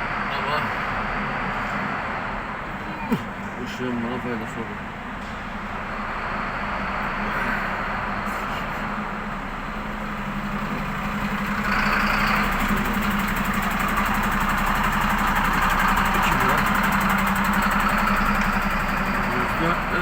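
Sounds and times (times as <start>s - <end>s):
diesel truck engine idling: 0.0s - 20.0s.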